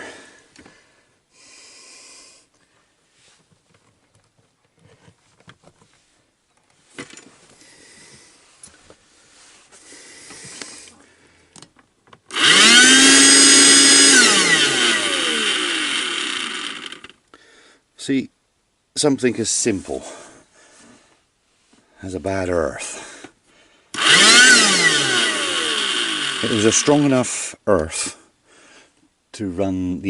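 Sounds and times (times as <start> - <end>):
faint handling clicks and rustles: 2.5 - 12.3
vacuum motor whining: 12.3 - 17.1, 24.0 - 27.1.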